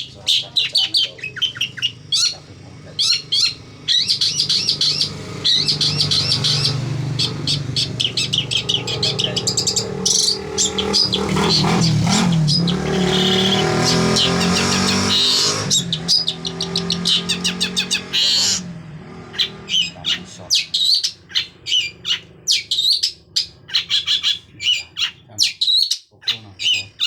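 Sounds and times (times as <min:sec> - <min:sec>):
vehicle engine humming: 0:00.0 - 0:25.5
bird chirping and trilling: 0:00.0 - 0:27.0.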